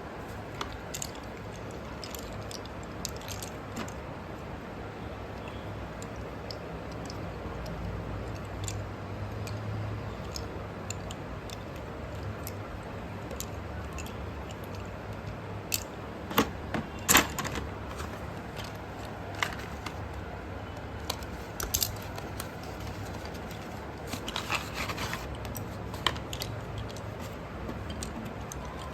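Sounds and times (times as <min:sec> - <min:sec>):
slate pencils clicking: 0:00.5 - 0:04.0, 0:13.2 - 0:28.9.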